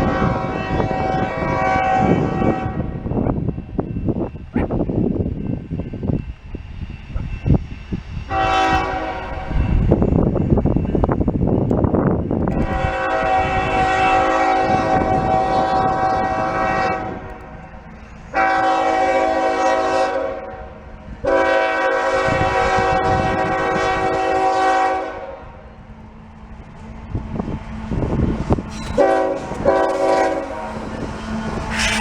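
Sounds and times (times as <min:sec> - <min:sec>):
locomotive air horn: 0:00.0 - 0:03.0, 0:08.3 - 0:09.6, 0:12.6 - 0:17.3, 0:18.3 - 0:25.6, 0:28.7 - 0:32.0
train rumble: 0:00.0 - 0:32.0.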